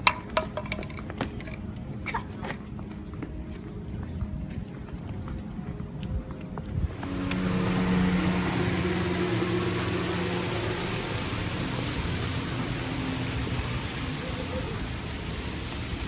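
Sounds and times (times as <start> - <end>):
vehicle engine hum: 5.8 - 16.0
rushing noise: 6.8 - 16.0.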